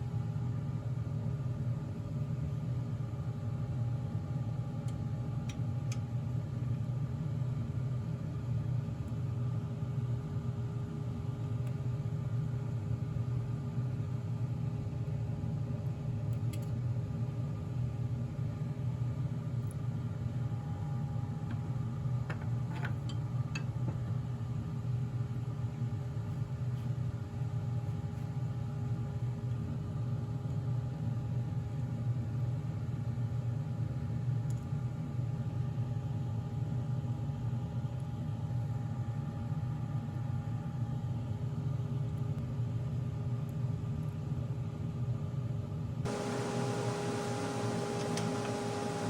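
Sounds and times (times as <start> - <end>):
wood lathe motor humming: 46.1 - 49.0.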